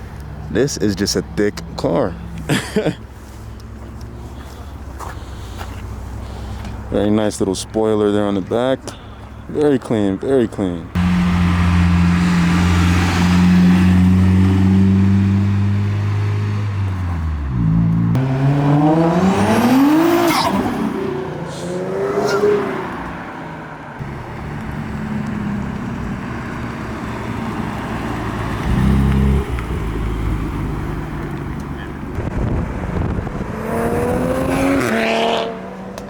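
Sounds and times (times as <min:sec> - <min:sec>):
car engine revving: 0:10.9 - 0:23.3, 0:24.0 - 0:36.0.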